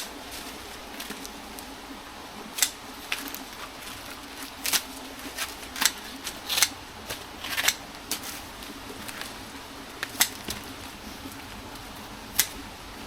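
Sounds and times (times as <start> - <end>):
scissors snipping leaves: 2.5 - 12.8.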